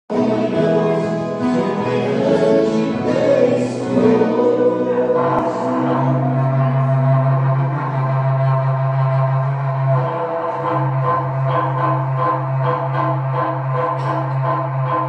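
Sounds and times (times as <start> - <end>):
singing over guitar music: 0.1 - 7.6.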